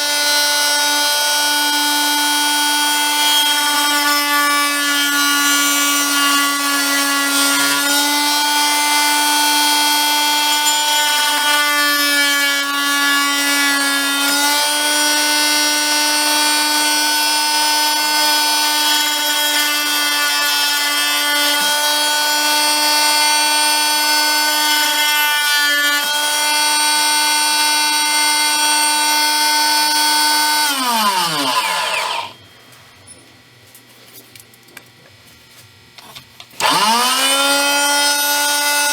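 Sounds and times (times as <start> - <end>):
blade cutting plastic: 0.0 - 32.4, 36.0 - 38.9
oscillating multi-tool buzzing: 4.9 - 25.0, 29.8 - 32.5.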